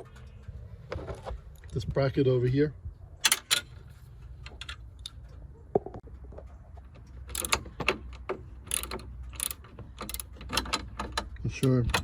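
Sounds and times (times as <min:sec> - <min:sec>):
metal bracket clicks and rattles: 0:03.2 - 0:05.5, 0:06.9 - 0:12.0.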